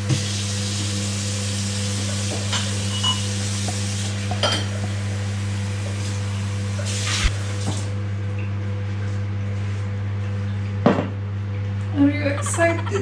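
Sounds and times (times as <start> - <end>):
dishes and cutlery clinking: 4.3 - 4.8.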